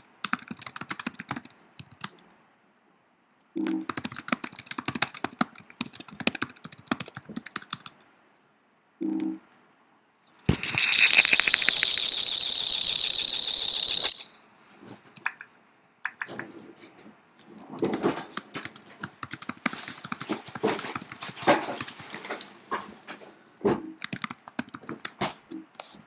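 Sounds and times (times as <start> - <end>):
laptop keyboard typing: 0.0 - 2.3, 3.6 - 8.1, 15.2 - 16.4, 17.8 - 22.0, 23.9 - 25.3
high-pitched whistle tone: 10.6 - 14.6.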